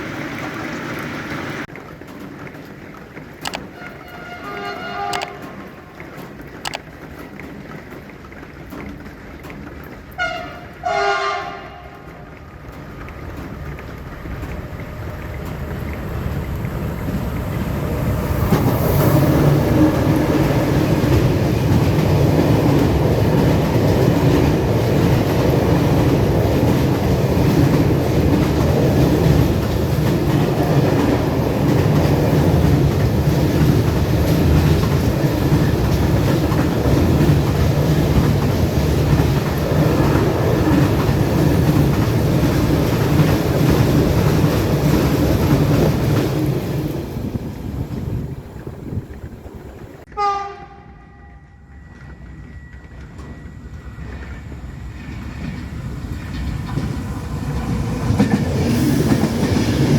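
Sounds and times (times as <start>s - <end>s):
train rumbling past: 0.0s - 59.9s
wheels clattering over rails: 12.0s - 50.1s.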